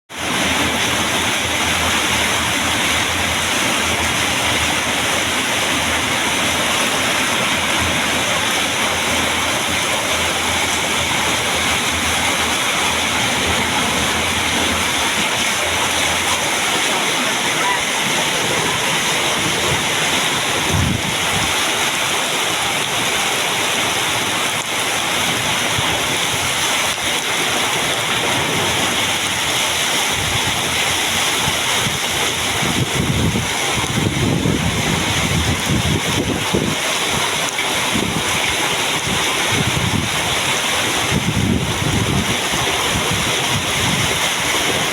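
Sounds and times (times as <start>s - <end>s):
heavy rain: 0.1s - 44.9s
wind buffeting microphone: 18.4s - 21.6s, 28.6s - 44.9s.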